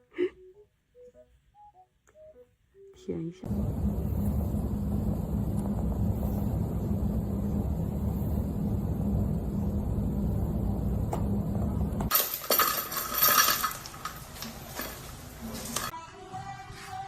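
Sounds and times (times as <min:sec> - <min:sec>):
low rumbling noise: 0:03.5 - 0:12.1
small hard objects clinking: 0:12.1 - 0:15.9.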